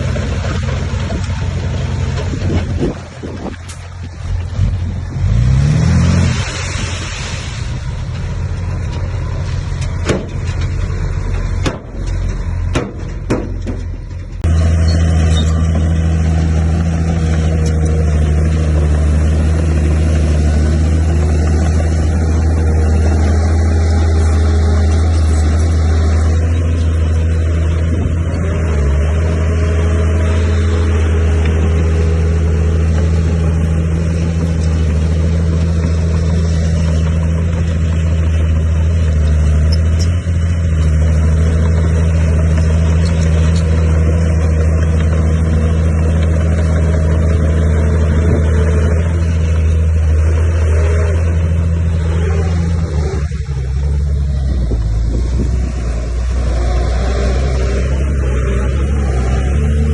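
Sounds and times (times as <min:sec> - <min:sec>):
diesel engine of heavy machinery: 0:00.0 - 0:59.9
sharp knocks: 0:11.6 - 0:14.0.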